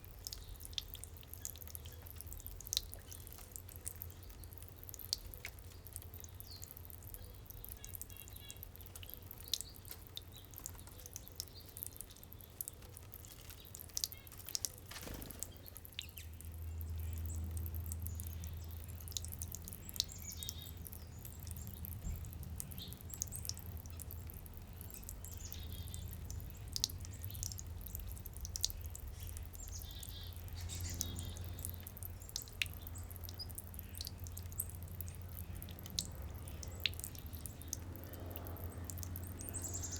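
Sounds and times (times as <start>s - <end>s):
fountain water dripping and trickling: 0.0s - 39.9s
small birds chirping: 0.0s - 39.9s.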